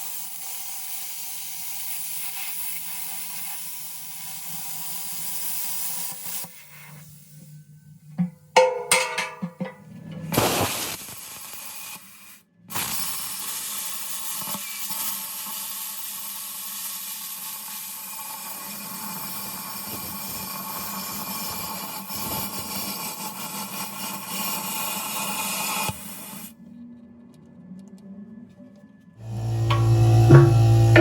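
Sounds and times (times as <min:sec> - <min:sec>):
music: 0:27.0 - 0:31.0.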